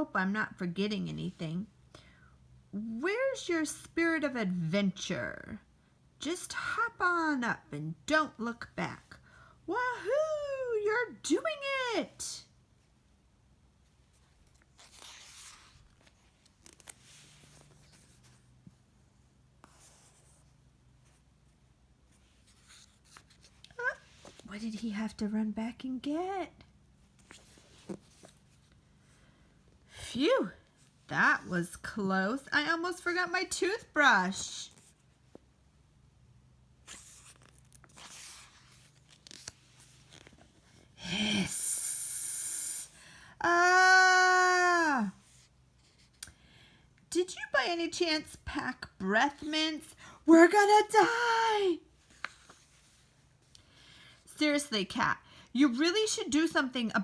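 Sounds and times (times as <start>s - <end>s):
low room hum: 0.0s - 57.0s
paper rustling: 14.1s - 18.5s, 22.2s - 24.5s, 36.8s - 40.8s, 52.0s - 53.4s
book pages turning: 14.1s - 18.8s, 22.0s - 25.0s, 27.0s - 29.0s, 36.8s - 40.9s, 52.0s - 53.6s
person hissing like a cat: 41.0s - 43.0s.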